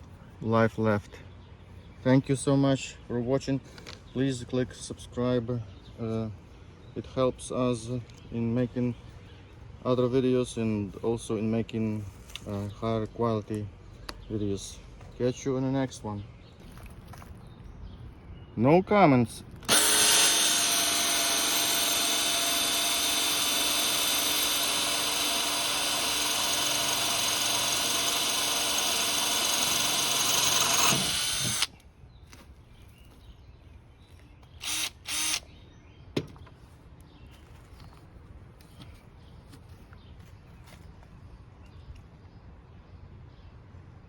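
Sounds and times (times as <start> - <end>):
drill click: 19.5 - 31.8, 34.5 - 35.4
electric drill running: 19.6 - 31.7, 34.6 - 35.4.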